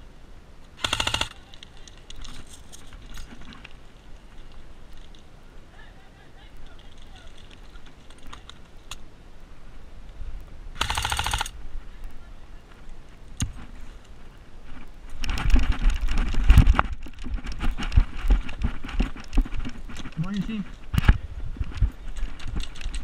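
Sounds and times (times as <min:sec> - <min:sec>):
airsoft gun firing bursts: 0:00.8 - 0:01.4, 0:10.8 - 0:11.6.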